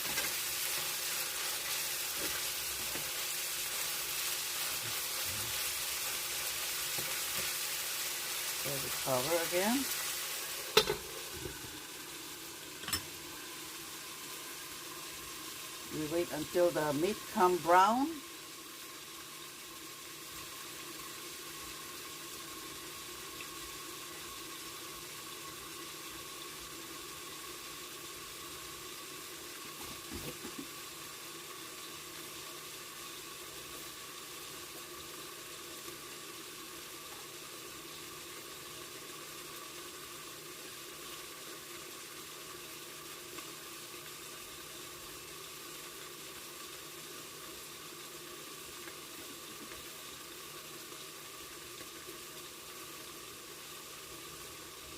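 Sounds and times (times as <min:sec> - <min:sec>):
meat sizzling and bubbling: 0:00.0 - 0:54.9.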